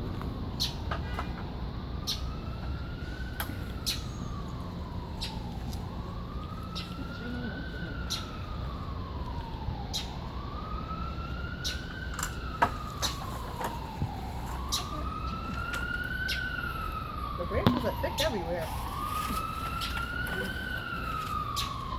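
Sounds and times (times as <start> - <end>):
siren wailing: 0.0 - 21.9.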